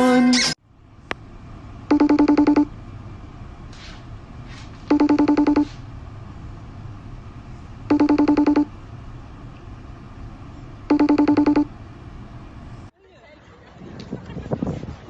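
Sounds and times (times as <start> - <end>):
electronic telephone ringing: 1.9 - 2.7, 4.9 - 5.7, 7.9 - 8.7, 10.9 - 11.7.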